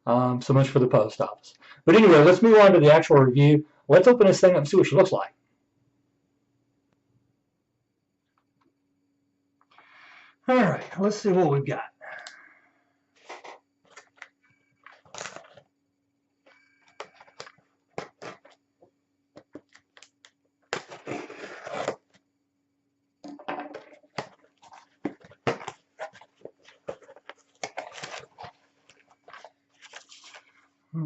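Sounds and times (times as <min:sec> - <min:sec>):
packing rustling: 0:13.3 - 0:15.7, 0:23.8 - 0:30.6
cardboard box being opened: 0:20.8 - 0:22.1, 0:24.1 - 0:28.6.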